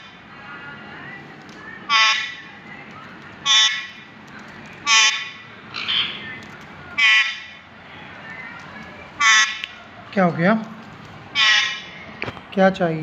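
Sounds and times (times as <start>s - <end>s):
parrot imitating vehicle horn: 1.9s - 2.4s, 3.4s - 3.9s, 4.8s - 5.4s, 7.0s - 7.6s, 9.2s - 9.6s, 11.4s - 11.9s
parrot squawk: 1.9s - 2.5s, 3.4s - 4.0s, 4.8s - 6.2s, 7.0s - 7.6s, 9.2s - 9.7s, 11.3s - 12.0s.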